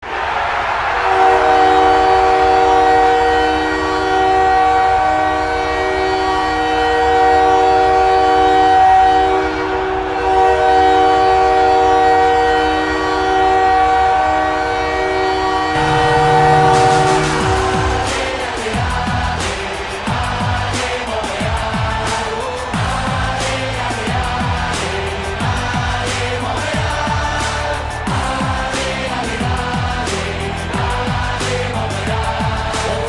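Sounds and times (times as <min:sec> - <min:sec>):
loud multi-note goal horn: 0:01.0 - 0:18.8.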